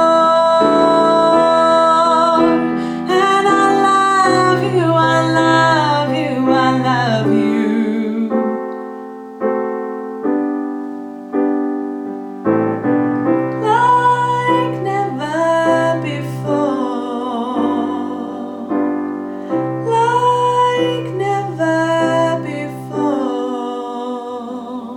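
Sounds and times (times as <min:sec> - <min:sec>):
woman singing: 0:00.0 - 0:08.7, 0:13.5 - 0:24.9
piano accompaniment: 0:00.0 - 0:24.9.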